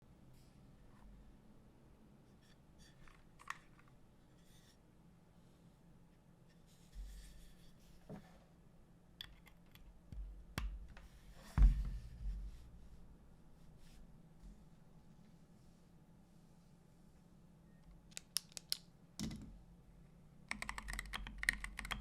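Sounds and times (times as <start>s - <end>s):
deep thud: 11.6s - 12.7s
mechanical keyboard clicks: 20.5s - 22.0s.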